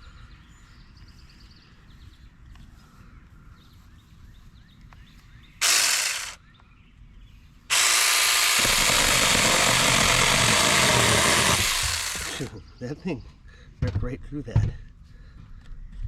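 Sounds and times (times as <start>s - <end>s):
electric chainsaw motor: 5.6s - 6.4s, 7.7s - 12.5s.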